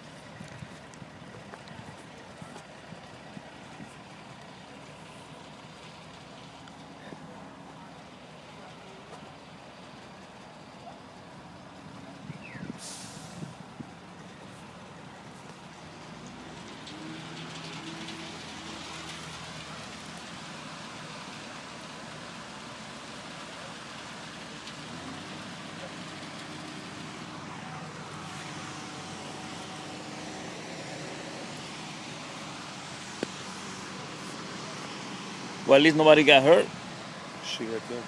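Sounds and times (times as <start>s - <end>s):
road traffic rush: 0.0s - 38.0s
truck engine rumbling: 0.0s - 38.0s
burst of hiss: 12.8s - 13.6s.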